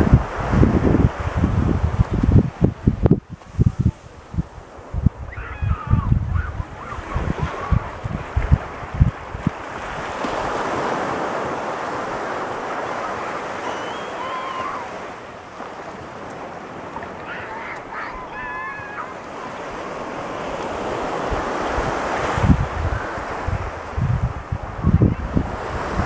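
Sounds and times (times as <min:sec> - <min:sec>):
waves breaking on beach: 0:00.0 - 0:26.0
wind buffeting microphone: 0:00.0 - 0:26.0
brief high calls: 0:13.0 - 0:15.1, 0:17.2 - 0:19.6.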